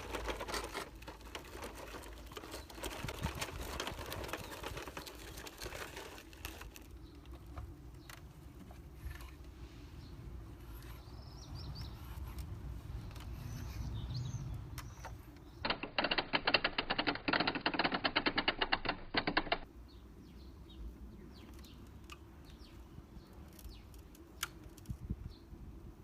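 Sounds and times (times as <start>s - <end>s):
faint birdsong: 0.0s - 15.8s, 19.6s - 26.0s
rapid mechanical clicks: 15.6s - 19.7s.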